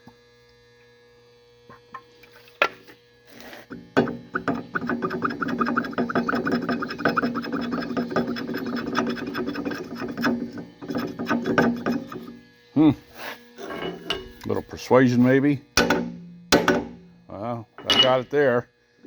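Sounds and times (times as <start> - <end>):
metal latch scraping and clicking: 13.6 - 14.6.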